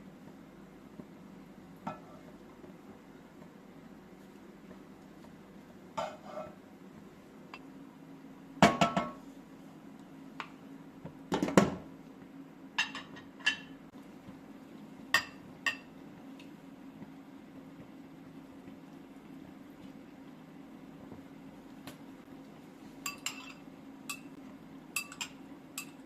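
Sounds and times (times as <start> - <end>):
dishes and utensils clinking: 12.8 - 13.8, 23.0 - 24.4, 25.0 - 26.0.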